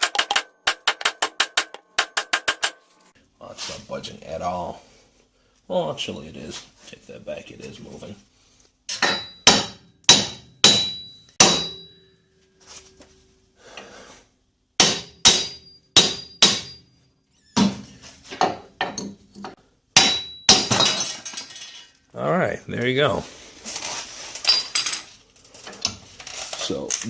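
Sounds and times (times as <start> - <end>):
hammer striking metal: 0.0 - 3.1, 8.9 - 12.2, 14.8 - 17.0, 18.4 - 21.0.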